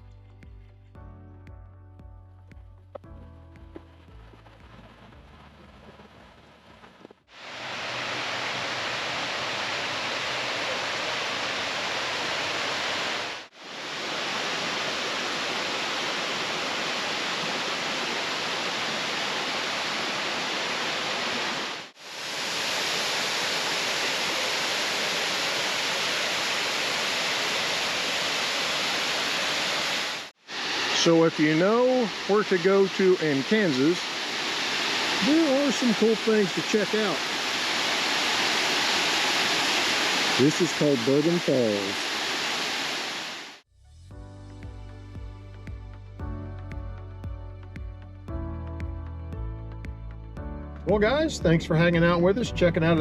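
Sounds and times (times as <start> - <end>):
water rushing over spillway: 7.3 - 43.6.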